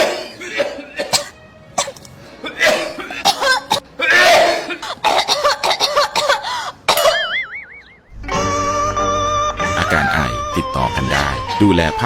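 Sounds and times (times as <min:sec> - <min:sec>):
person coughing: 0:00.0 - 0:07.3.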